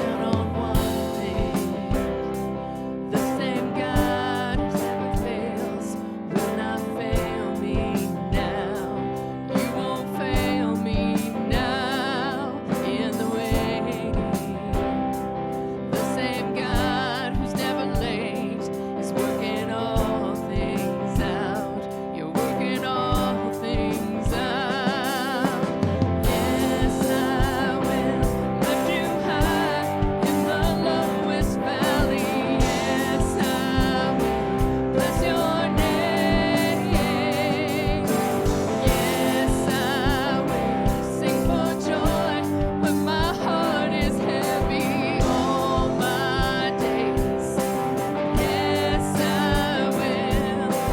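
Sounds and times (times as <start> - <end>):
drum beat: 0.0 - 5.8, 22.4 - 50.9
person singing: 0.0 - 50.9
worship band playing: 0.0 - 50.9.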